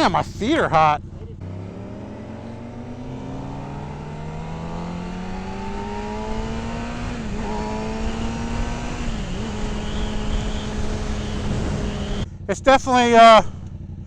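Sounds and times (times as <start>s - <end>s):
motorcycle engine accelerating: 0.0s - 14.0s
wind rush: 5.9s - 12.2s.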